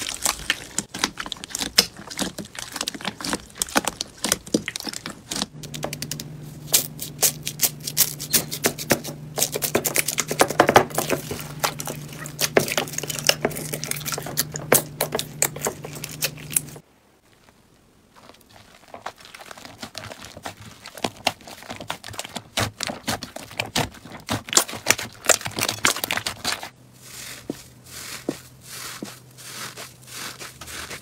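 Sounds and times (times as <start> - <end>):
slime squished by hand: 0.0 - 16.8, 18.2 - 31.0
steady low hum: 1.4 - 17.2.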